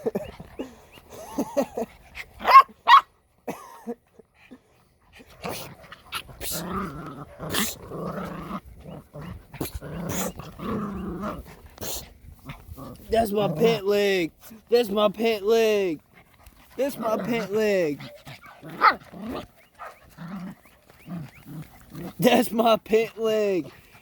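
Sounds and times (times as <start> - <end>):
puppy yipping: 2.4 - 3.1
puppy growling: 3.9 - 14.7, 15.4 - 24.0.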